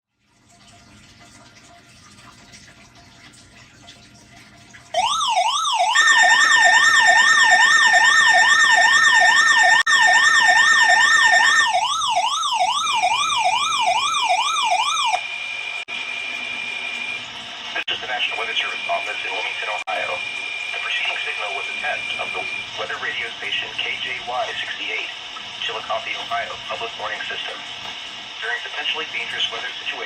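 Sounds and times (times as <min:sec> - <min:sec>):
warbling siren: 0:04.9 - 0:27.6
higher steady tone: 0:17.8 - 0:25.0.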